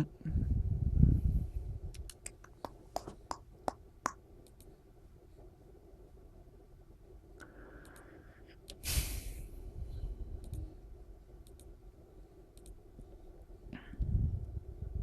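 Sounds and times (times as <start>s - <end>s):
computer mouse clicking: 4.4s - 4.7s, 7.8s - 8.8s, 10.4s - 10.7s, 11.4s - 11.7s, 12.6s - 12.8s.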